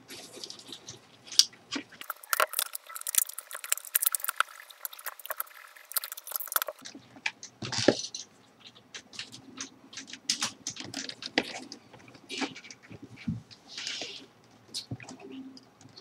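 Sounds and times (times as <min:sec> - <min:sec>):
wires and plastic parts clicking: 0:00.0 - 0:16.0.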